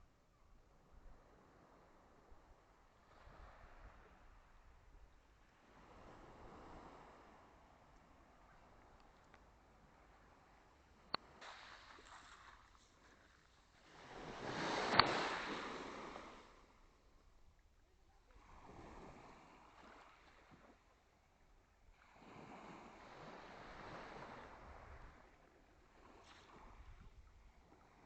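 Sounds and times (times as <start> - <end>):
small waves washing onto shore: 5.5 - 17.2, 18.3 - 20.9, 21.9 - 28.0.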